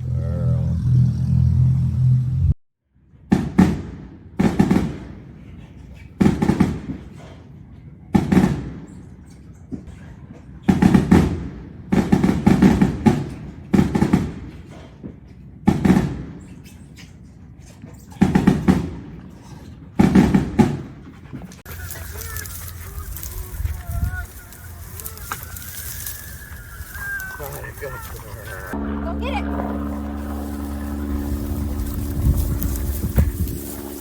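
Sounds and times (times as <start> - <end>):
fireworks bangs with echo: 3.3 - 5.2, 6.2 - 7.1, 8.2 - 9.0, 10.7 - 14.6, 15.7 - 16.4, 20.0 - 20.9.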